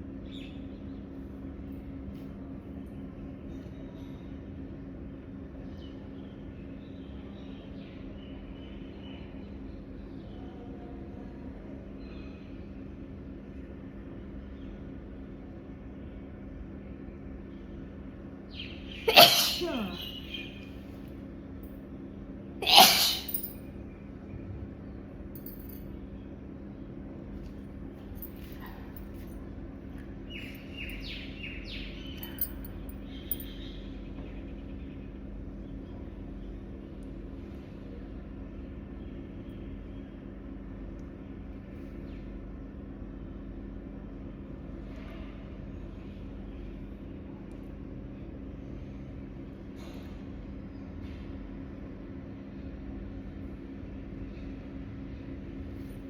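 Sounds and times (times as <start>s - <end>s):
low mechanical hum: 0.0s - 56.0s
person sneezing: 19.1s - 20.0s, 22.6s - 23.5s.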